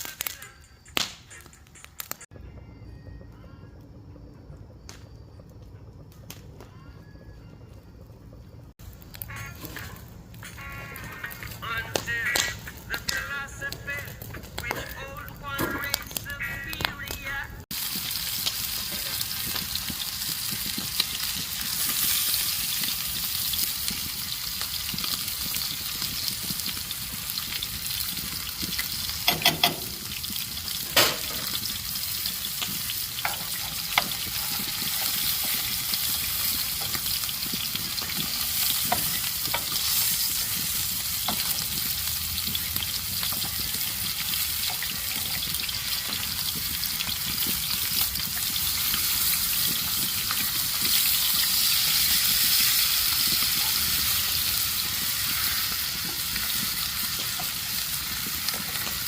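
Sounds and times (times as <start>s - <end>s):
food sizzling in a hot pan: 17.7s - 59.0s.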